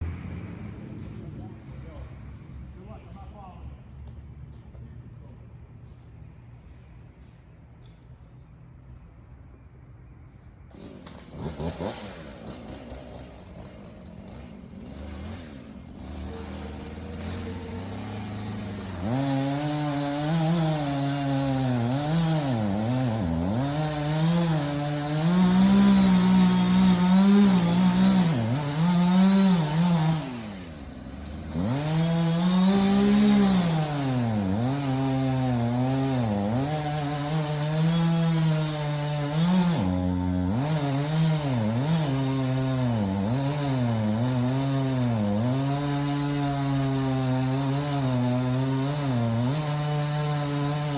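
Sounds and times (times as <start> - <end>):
chainsaw cutting wood: 10.7 - 50.9.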